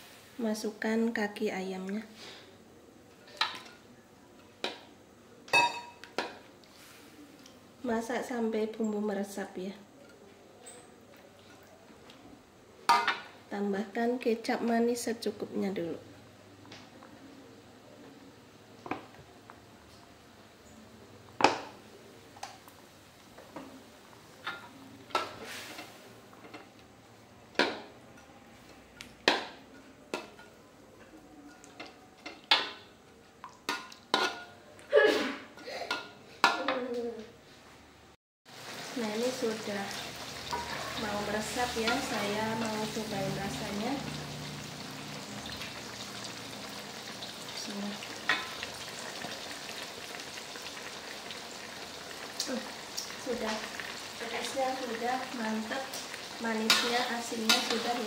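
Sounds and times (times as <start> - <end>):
food simmering in sauce: 38.5 - 58.0.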